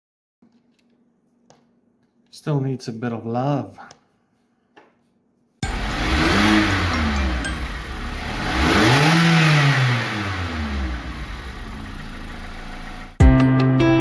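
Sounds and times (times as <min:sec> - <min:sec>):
rc car motor whine: 0:05.6 - 0:13.2
tyre and drivetrain noise: 0:05.6 - 0:13.2.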